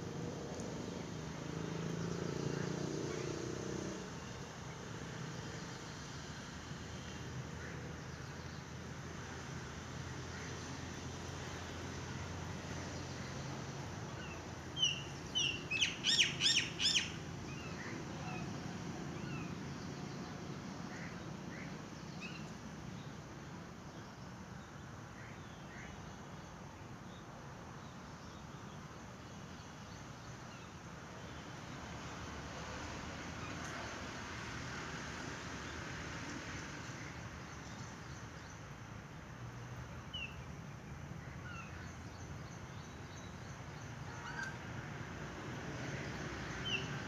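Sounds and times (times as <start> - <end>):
outdoor background noise: 0.0 - 47.0
birds chirping: 14.2 - 18.4.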